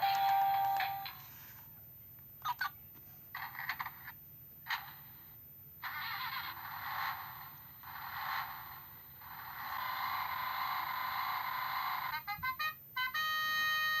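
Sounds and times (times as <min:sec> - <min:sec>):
held electronic tone: 0:00.0 - 0:01.2
short beeping tones: 0:00.0 - 0:01.2.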